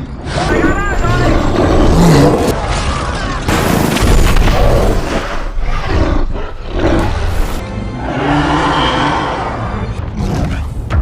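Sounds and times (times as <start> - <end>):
film music: 0.0 - 11.0
large creature roaring: 0.2 - 3.4, 4.4 - 10.7
booming impacts: 3.5 - 7.6.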